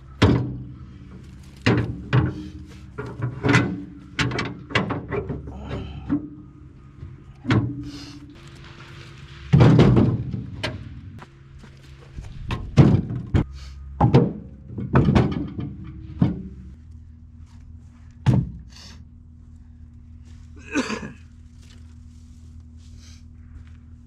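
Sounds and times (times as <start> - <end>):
logs thunking onto a trailer: 0.0 - 6.4, 7.0 - 11.2, 12.1 - 16.8, 18.2 - 18.7.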